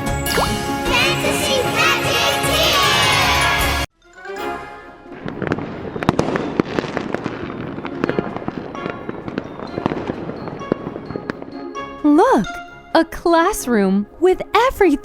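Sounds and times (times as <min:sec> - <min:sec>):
chiming notes: 0:04.0 - 0:13.2
crackling pops and sparkles: 0:05.2 - 0:11.6.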